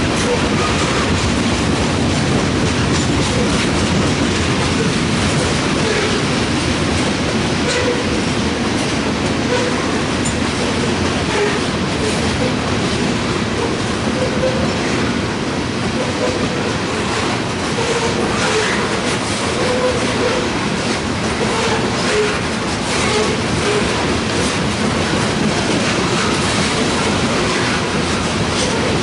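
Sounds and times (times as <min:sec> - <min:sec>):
freight train rumbling past: 0:00.0 - 0:29.0
wheels clicking over rail joints: 0:00.0 - 0:29.0.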